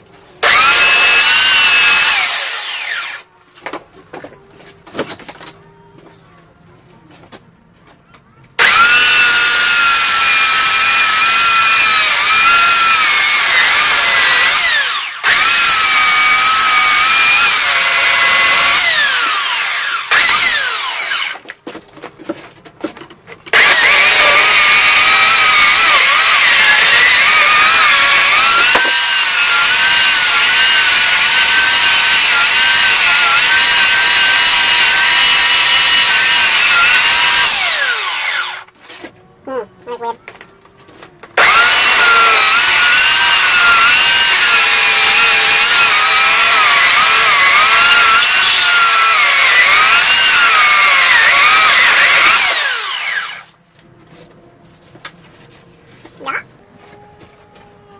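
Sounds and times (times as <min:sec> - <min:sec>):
electric sander whining on wood: 0:00.4 - 0:03.2, 0:08.6 - 0:21.4, 0:23.5 - 0:38.7, 0:41.4 - 0:53.6.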